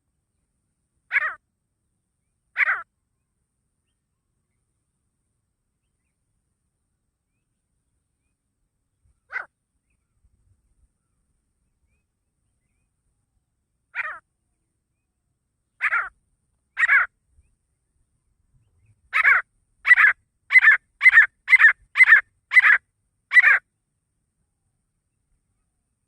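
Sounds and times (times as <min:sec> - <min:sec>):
francolin calling: 0:01.1 - 0:01.4, 0:02.5 - 0:02.9, 0:13.9 - 0:14.2, 0:15.8 - 0:17.1, 0:19.1 - 0:23.6.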